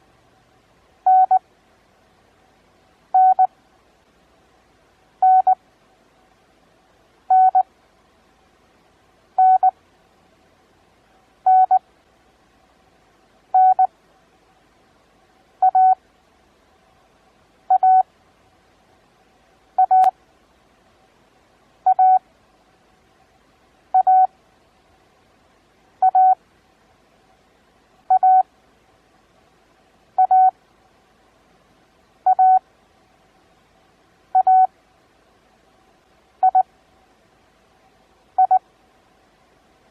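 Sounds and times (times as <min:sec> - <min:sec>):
morse code beeps: 0:01.1 - 0:01.4, 0:03.2 - 0:03.5, 0:05.2 - 0:05.6, 0:07.3 - 0:07.6, 0:09.4 - 0:09.7, 0:11.5 - 0:11.8, 0:13.6 - 0:13.9, 0:15.6 - 0:16.0, 0:17.7 - 0:18.0, 0:19.8 - 0:20.1, 0:21.9 - 0:22.2, 0:24.0 - 0:24.3, 0:26.0 - 0:26.4, 0:28.1 - 0:28.4, 0:30.2 - 0:30.5, 0:32.3 - 0:32.6, 0:34.4 - 0:34.7, 0:36.4 - 0:36.6, 0:38.4 - 0:38.6.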